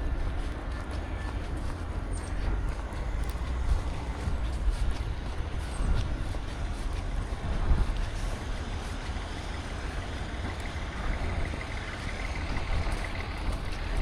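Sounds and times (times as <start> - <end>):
street traffic rumble: 0.0 - 14.0.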